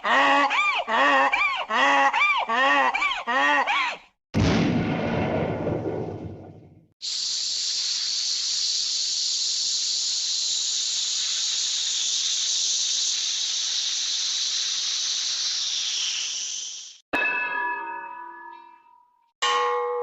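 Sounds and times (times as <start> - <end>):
cartoon high hiss: 7.0 - 17.0.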